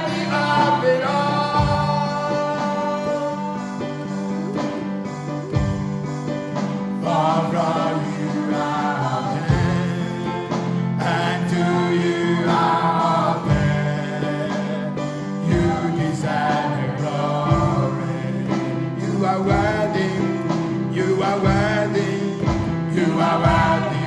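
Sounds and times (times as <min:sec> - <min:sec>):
people singing: 0:00.0 - 0:24.0.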